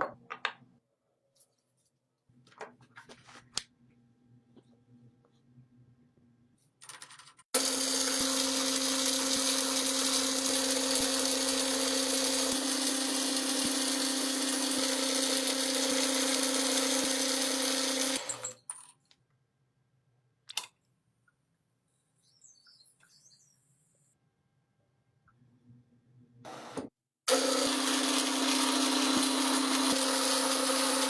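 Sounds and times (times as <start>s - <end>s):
electric motor humming: 7.6s - 18.4s, 27.3s - 31.0s.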